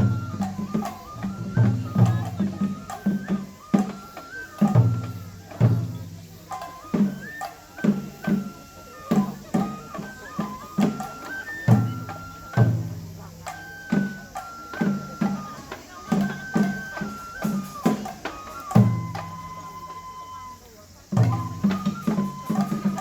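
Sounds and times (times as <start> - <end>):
high flute melody: 0.0 - 23.0
taiko drum beats: 0.0 - 23.0.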